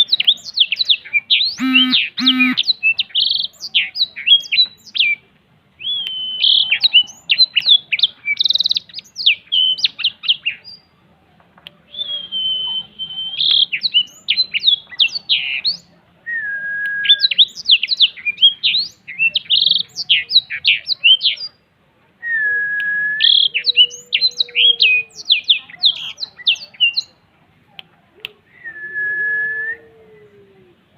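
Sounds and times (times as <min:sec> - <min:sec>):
canary singing twittering trills: 0:00.0 - 0:05.2, 0:05.8 - 0:10.9, 0:11.9 - 0:16.0, 0:17.1 - 0:21.6, 0:23.2 - 0:27.2.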